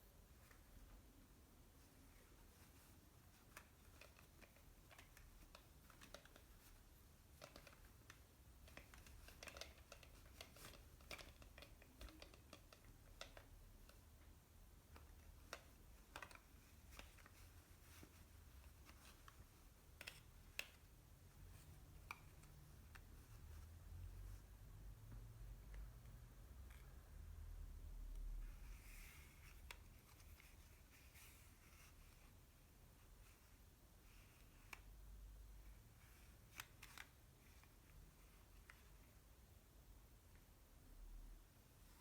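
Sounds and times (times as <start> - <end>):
taps and clicks of handling objects: 2.8 - 20.9.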